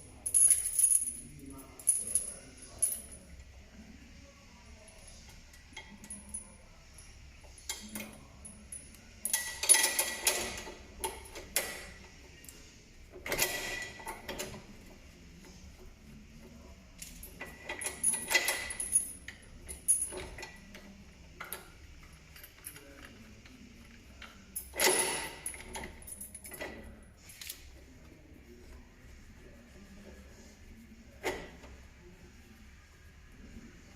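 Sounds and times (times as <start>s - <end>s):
metal tools clinking and rattling: 0.2s - 3.3s, 7.6s - 12.0s, 17.0s - 20.6s.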